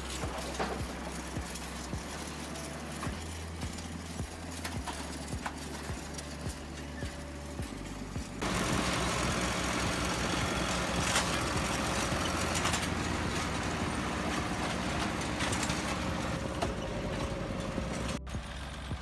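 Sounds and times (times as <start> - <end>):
farm machine engine running: 8.4 - 19.0.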